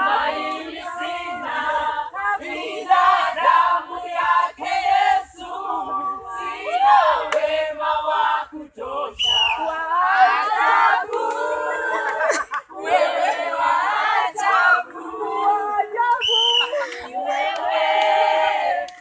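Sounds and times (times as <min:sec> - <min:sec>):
choir singing: 0:00.0 - 0:19.0.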